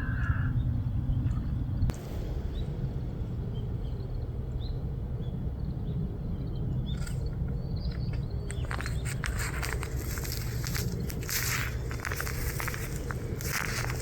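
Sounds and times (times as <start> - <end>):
steady low rumble: 0.0 - 14.0
small birds chirping: 3.4 - 14.0.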